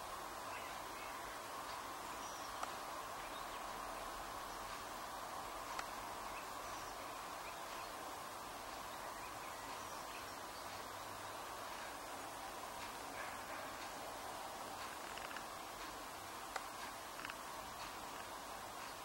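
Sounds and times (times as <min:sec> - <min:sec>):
small birds chirping: 0:00.0 - 0:19.0
steady background hiss: 0:00.0 - 0:19.0
small clicks: 0:02.5 - 0:02.8, 0:05.7 - 0:06.8, 0:14.8 - 0:19.0.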